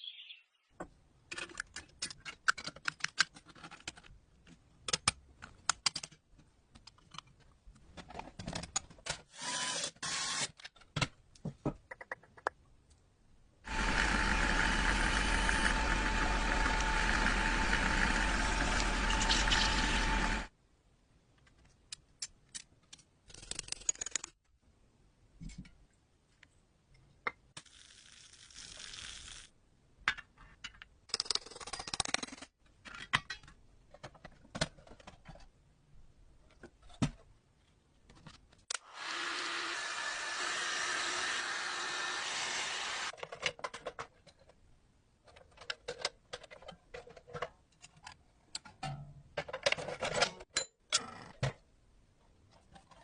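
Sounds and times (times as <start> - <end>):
power tool whining: 13.7 - 20.5, 38.8 - 43.1.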